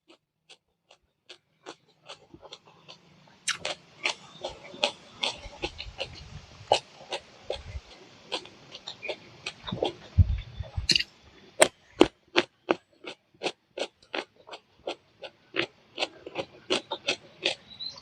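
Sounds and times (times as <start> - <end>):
chewing with mouth clicks: 0.0 - 11.0, 11.6 - 18.0
low thumps: 9.7 - 11.0.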